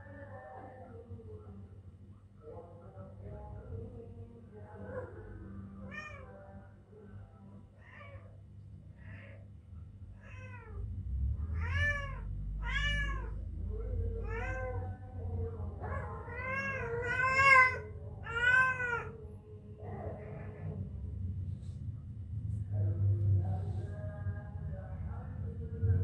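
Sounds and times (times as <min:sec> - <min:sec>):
kitten mewing: 0:10.2 - 0:10.9, 0:11.5 - 0:15.0, 0:15.8 - 0:19.2.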